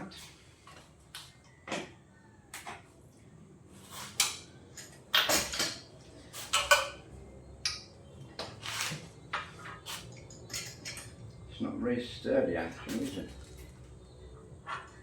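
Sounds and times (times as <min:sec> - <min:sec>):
metal spanners clinking: 0:09.7 - 0:11.4.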